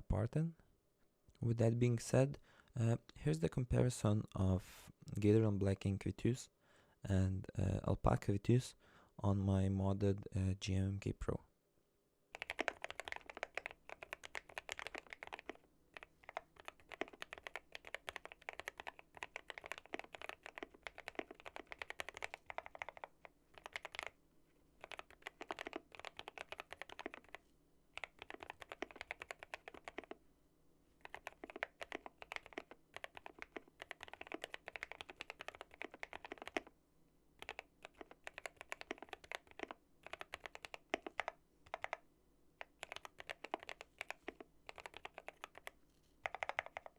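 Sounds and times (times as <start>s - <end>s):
mechanical keyboard typing: 12.3s - 24.2s, 24.8s - 27.4s, 28.0s - 30.2s, 31.0s - 36.7s, 37.4s - 42.0s, 42.6s - 46.9s.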